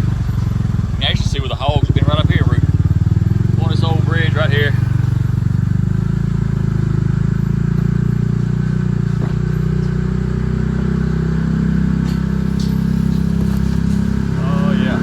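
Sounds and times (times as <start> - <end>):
utility vehicle engine running: 0.0 - 15.0
knocks from vehicle ride: 9.0 - 10.0.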